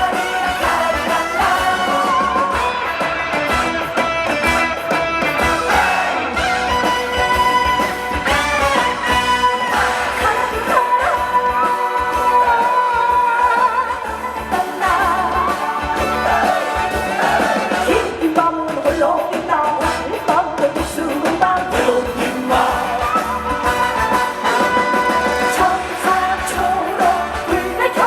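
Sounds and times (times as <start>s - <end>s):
woman singing: 0.0s - 2.9s, 9.0s - 28.0s
backing music with steady beat: 0.0s - 28.0s.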